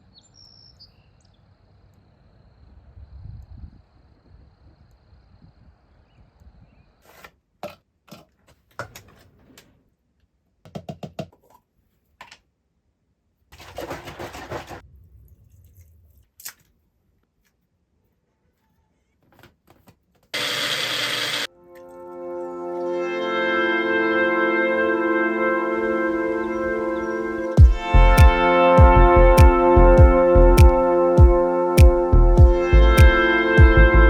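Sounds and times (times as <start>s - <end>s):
brass music: 21.4s - 34.0s.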